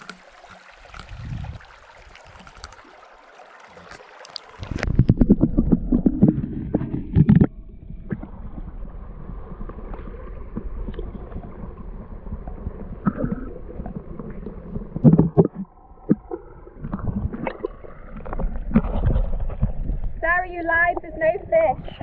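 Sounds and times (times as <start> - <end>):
river water flowing: 0.0 - 4.8
wind on microphone: 1.0 - 1.7, 18.6 - 22.0.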